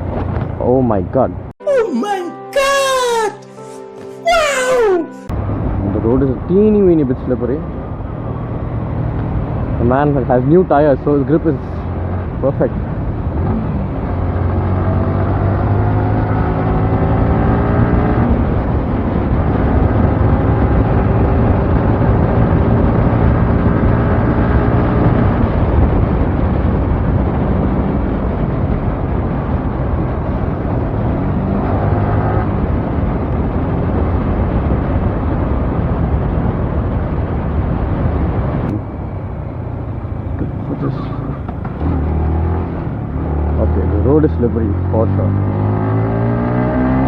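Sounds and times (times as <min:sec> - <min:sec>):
wind rushing over microphone: 0:05.3 - 0:44.6
motorcycle engine running: 0:38.7 - 0:44.2.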